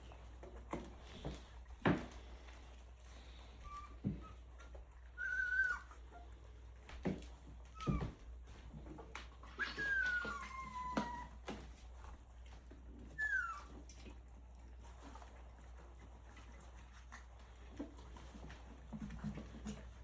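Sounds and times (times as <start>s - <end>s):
puppies smacking while eating: 0.0s - 20.0s
puppies whimpering: 2.6s - 14.3s.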